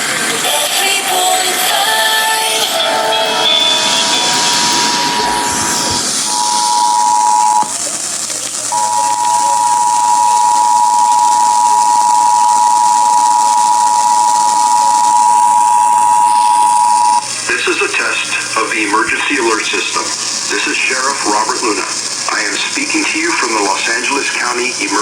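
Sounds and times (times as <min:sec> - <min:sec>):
radio hiss: 0:00.0 - 0:25.0
two-tone alert signal: 0:03.3 - 0:07.7, 0:08.7 - 0:17.2.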